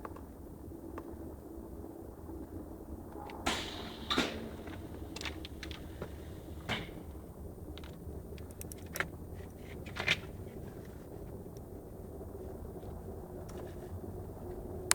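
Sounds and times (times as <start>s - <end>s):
low steady hum: 0.0s - 14.9s
tools clicking and knocking: 7.8s - 10.4s.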